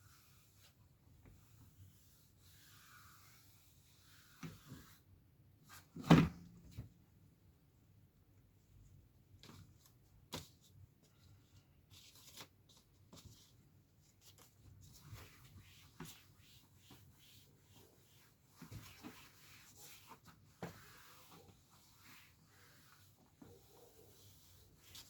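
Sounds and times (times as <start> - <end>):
rubbing and handling noises: 9.3 - 25.0.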